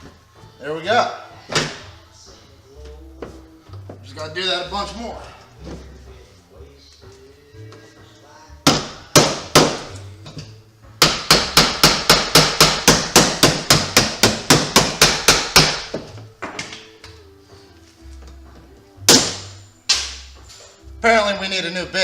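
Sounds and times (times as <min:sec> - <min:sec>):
quiet background music: 0:00.0 - 0:22.0
hammer strikes: 0:08.6 - 0:10.0, 0:11.0 - 0:16.9, 0:19.1 - 0:20.3.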